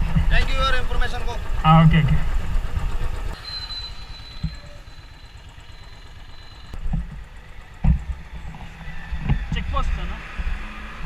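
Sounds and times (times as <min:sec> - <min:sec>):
motorcycle engine running: 0:00.0 - 0:11.0
thin high whine: 0:02.9 - 0:10.0.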